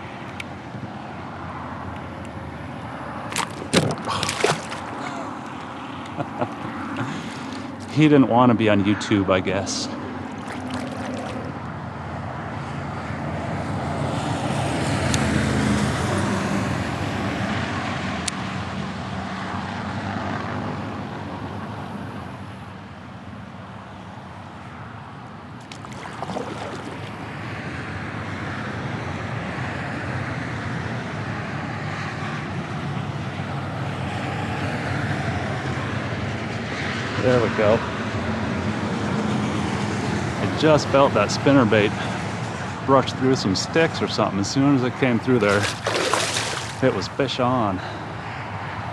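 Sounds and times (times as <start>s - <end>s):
highway traffic rushing: 0.0s - 48.9s.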